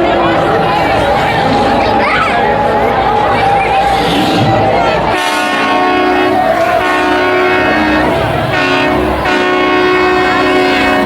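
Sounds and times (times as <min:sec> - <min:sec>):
train horn blasts: 0:05.0 - 0:11.0.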